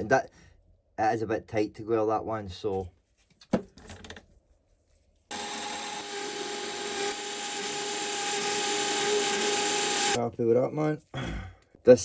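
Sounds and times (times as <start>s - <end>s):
lathe cutting with whine: 5.3s - 10.2s.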